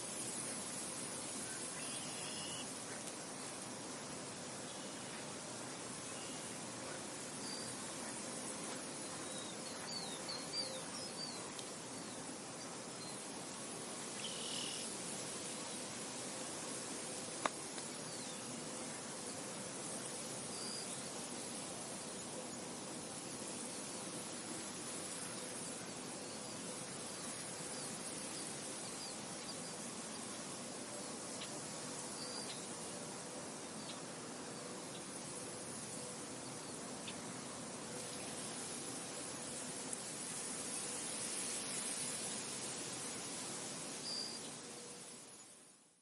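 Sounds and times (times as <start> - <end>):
wind rustling through wheat: 0.0 - 46.0.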